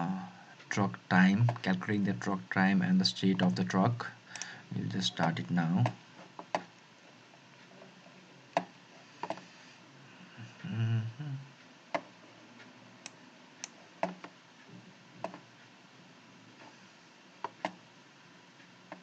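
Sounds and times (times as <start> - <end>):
low voiced hum: 0.0 - 6.0, 7.6 - 12.3.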